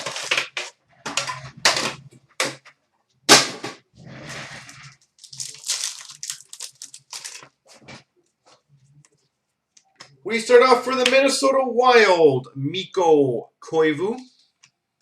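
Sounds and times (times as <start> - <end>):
foil wrapper crinkling and tearing: 0.0 - 0.8, 4.8 - 7.8
cards rustling: 5.0 - 8.7.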